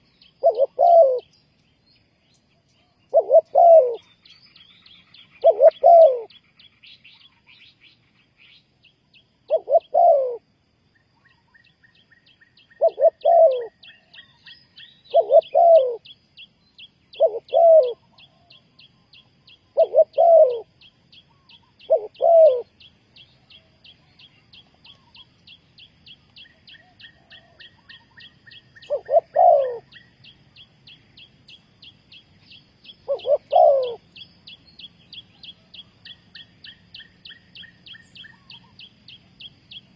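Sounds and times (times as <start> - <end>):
dove cooing: 0.0 - 1.3, 3.0 - 4.2, 5.2 - 6.4, 9.4 - 10.4, 12.6 - 16.2, 17.1 - 22.9, 26.4 - 30.1, 32.9 - 34.2
faint high chirping: 0.0 - 39.9.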